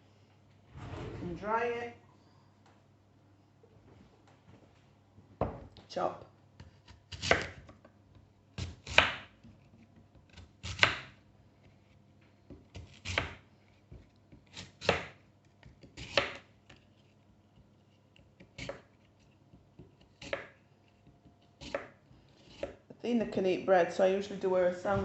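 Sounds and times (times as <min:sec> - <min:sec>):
knife chopping on board: 0:06.6 - 0:07.8, 0:08.6 - 0:09.4, 0:10.1 - 0:11.2, 0:12.5 - 0:16.5, 0:18.4 - 0:18.9, 0:19.6 - 0:22.8.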